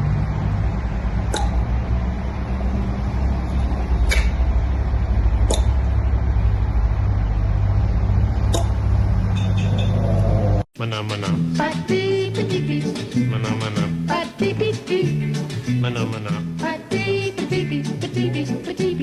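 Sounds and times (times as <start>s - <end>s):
steady low rumble: 0.0s - 10.7s.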